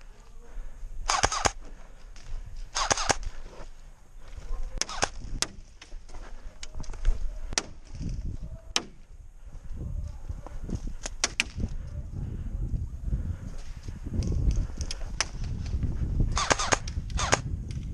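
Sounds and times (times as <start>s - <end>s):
airsoft gun shots: 1.1s - 1.6s, 2.7s - 3.3s, 4.8s - 5.6s, 16.3s - 17.5s.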